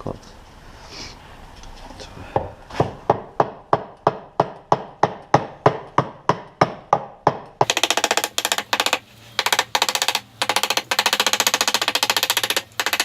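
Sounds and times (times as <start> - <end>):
hammer tapping metal part: 5.3 - 13.0.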